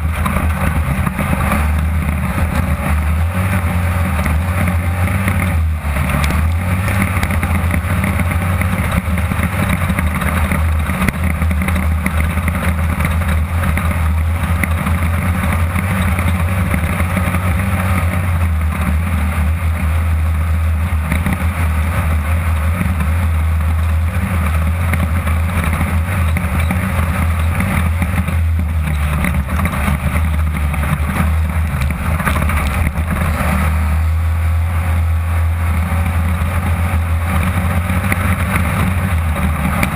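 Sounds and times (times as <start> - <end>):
buggy engine droning: 0.0 - 39.9.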